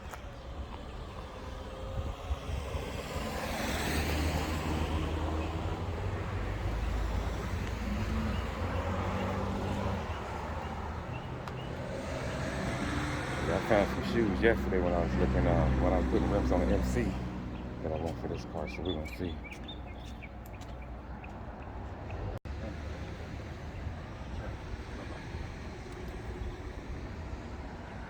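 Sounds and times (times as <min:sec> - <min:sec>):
car engine rumble: 0:00.0 - 0:28.0
road noise: 0:00.0 - 0:28.0.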